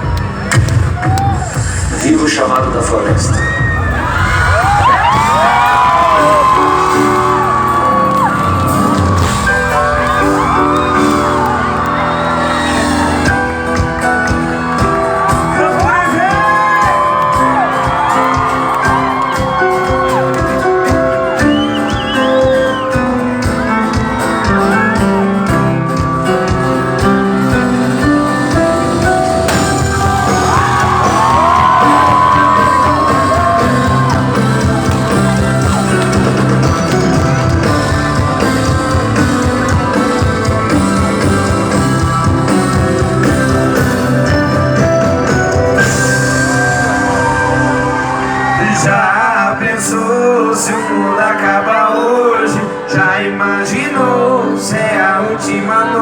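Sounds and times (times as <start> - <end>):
loud music with drum beat: 0.0 - 47.8
high gliding whoops: 29.5 - 36.2.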